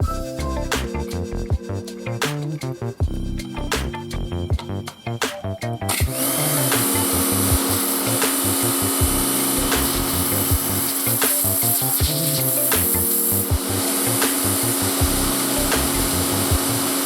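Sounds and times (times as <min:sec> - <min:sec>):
background music: 0:00.0 - 0:17.0
pressure washer motor hum: 0:06.0 - 0:11.5
spraying water hiss: 0:06.8 - 0:13.5.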